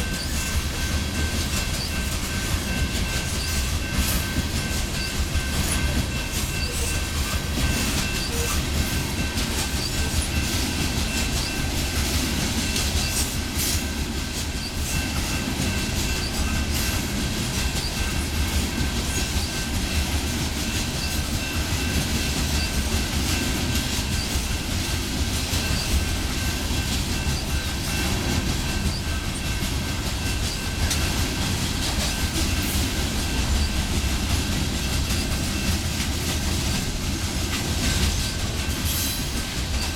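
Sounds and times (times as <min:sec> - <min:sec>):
train wheels clicking over rail joints: 0:00.0 - 0:39.9.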